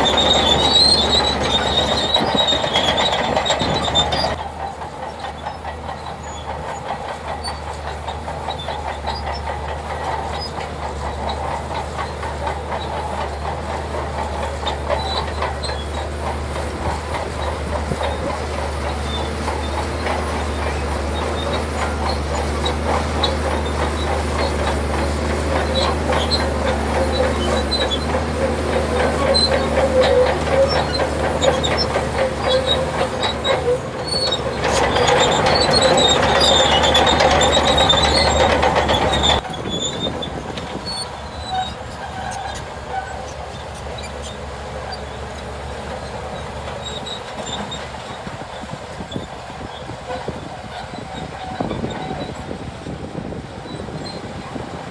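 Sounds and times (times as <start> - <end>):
diesel engine hum: 0.0 - 54.9
steel tracks clanking and squealing: 0.0 - 54.9.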